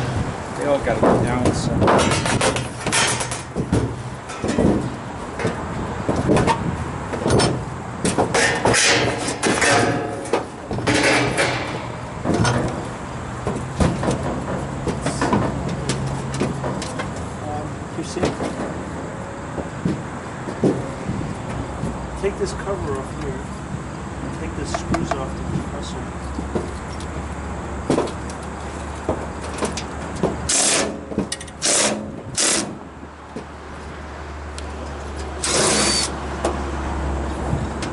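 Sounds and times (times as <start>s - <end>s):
sheet metal knocking and clattering: 1.0s - 6.6s, 7.2s - 17.1s
cordless drill driving screws: 35.4s - 36.1s.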